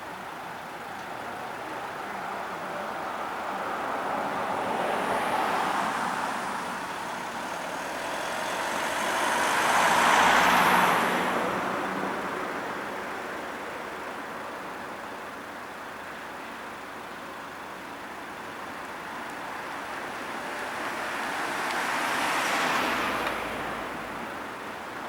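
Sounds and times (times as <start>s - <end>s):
road traffic passing: 0.0s - 25.0s
vehicle going by: 3.8s - 12.5s, 19.8s - 24.2s.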